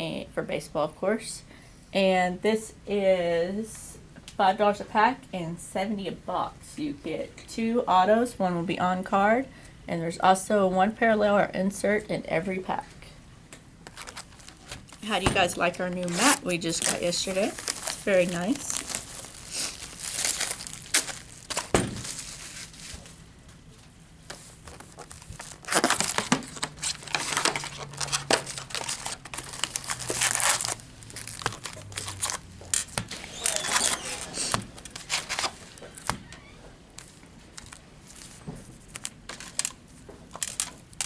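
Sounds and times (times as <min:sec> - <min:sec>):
plastic wrapping crinkling and tearing: 0:13.8 - 0:23.2, 0:24.6 - 0:41.0.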